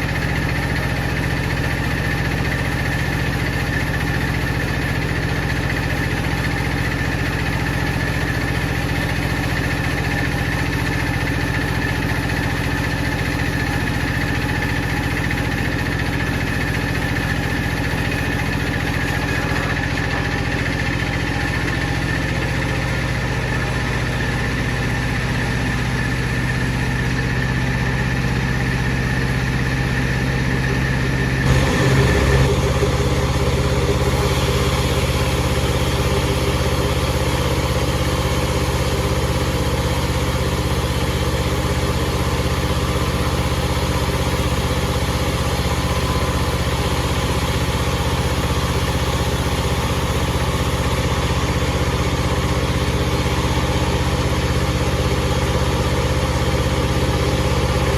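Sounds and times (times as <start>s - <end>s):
bandsaw hum: 0.0s - 22.6s, 30.0s - 57.9s
high whine: 27.3s - 57.9s.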